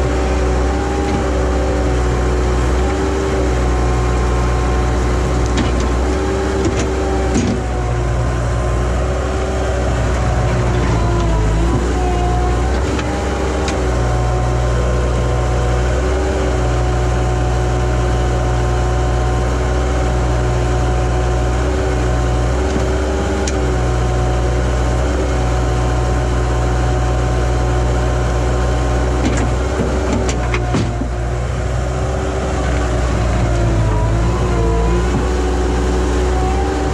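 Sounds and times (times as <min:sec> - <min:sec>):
hydraulic whine: 0:00.0 - 0:26.1, 0:28.1 - 0:36.9
diesel engine running: 0:00.0 - 0:36.9.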